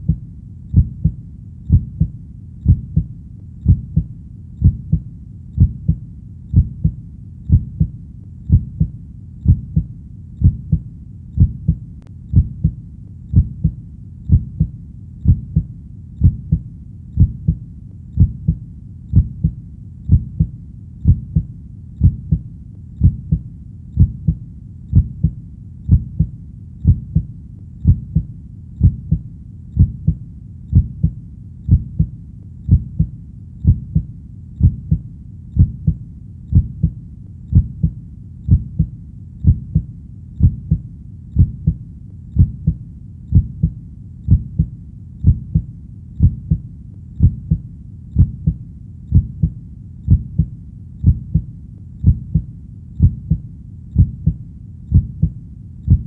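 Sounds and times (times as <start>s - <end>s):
heartbeat thumps: 0.0s - 56.0s
low steady rumble: 0.0s - 56.0s.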